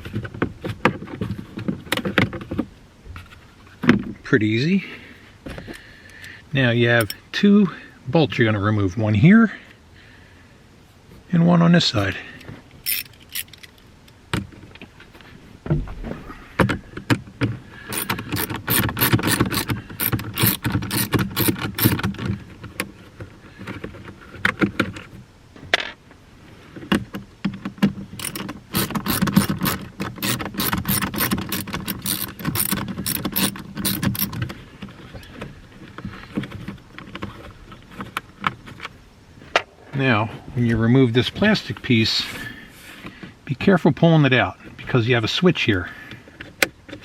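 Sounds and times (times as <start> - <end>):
hand ratchet clicking: 12.8 - 13.8, 17.9 - 22.2, 28.2 - 34.4.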